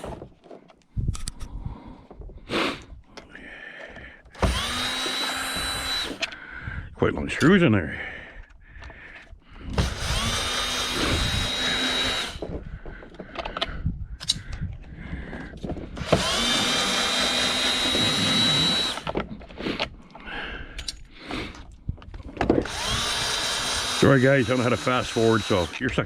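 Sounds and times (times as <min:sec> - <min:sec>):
clicks and clatter of handling: 0:00.0 - 0:02.3, 0:12.4 - 0:16.0, 0:19.0 - 0:22.7
power drill whine: 0:04.3 - 0:06.4, 0:09.7 - 0:12.6, 0:16.0 - 0:19.2, 0:22.5 - 0:26.0.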